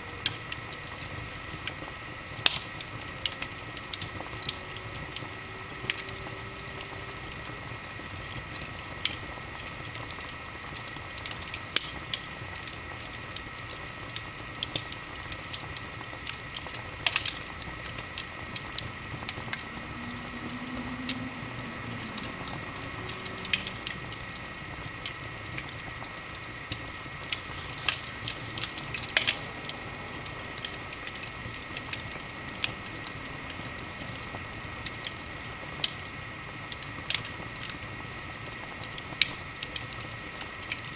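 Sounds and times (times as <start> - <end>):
wood fire crackling and popping: 0.0 - 40.9
faint high whine: 17.4 - 25.4.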